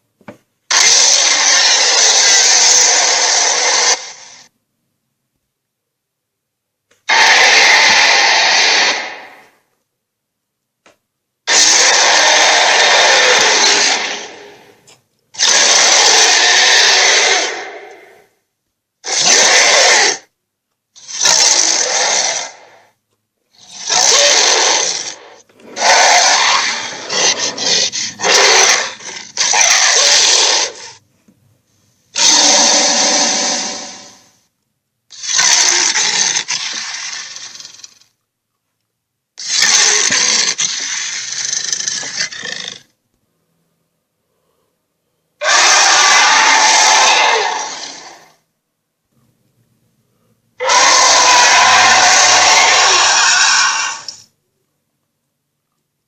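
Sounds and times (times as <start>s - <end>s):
monster roar: 0.7s - 4.5s, 7.1s - 9.6s, 11.5s - 14.8s, 15.4s - 18.3s, 19.0s - 20.3s, 21.0s - 22.9s, 23.6s - 31.0s, 32.2s - 34.3s, 35.2s - 38.0s, 39.4s - 42.9s, 45.4s - 48.4s, 50.6s - 54.3s.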